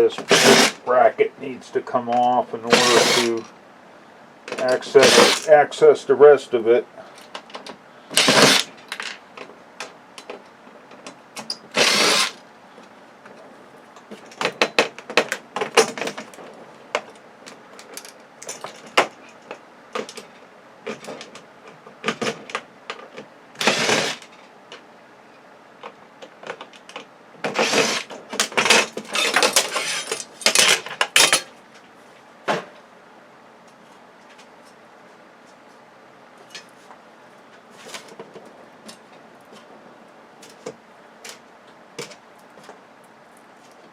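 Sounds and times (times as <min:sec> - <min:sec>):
power drill backing out screws: 0:00.2 - 0:00.8, 0:02.7 - 0:03.5, 0:04.5 - 0:05.5, 0:08.1 - 0:09.0, 0:11.4 - 0:12.4, 0:23.6 - 0:24.3, 0:27.5 - 0:31.3
screws and metal parts clattering: 0:00.2 - 0:00.8, 0:02.1 - 0:03.5, 0:04.5 - 0:05.5, 0:07.2 - 0:09.2, 0:17.8 - 0:21.4, 0:26.5 - 0:31.5.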